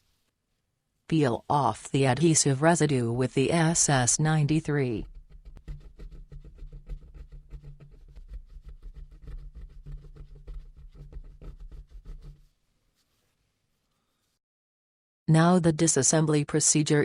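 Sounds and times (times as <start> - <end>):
tool scraping plastic: 4.8 - 12.5.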